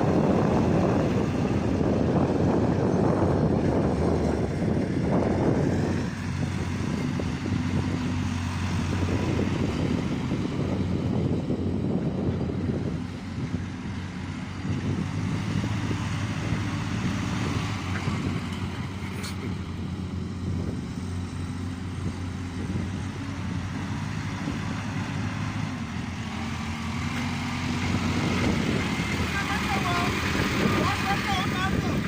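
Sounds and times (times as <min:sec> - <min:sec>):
diesel engine running: 0:00.0 - 0:32.0.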